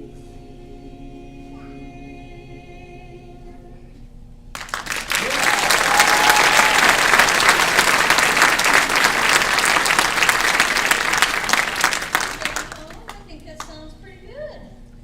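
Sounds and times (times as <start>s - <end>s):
choir singing held chord: 0.0s - 3.8s
audience applause: 4.6s - 13.3s.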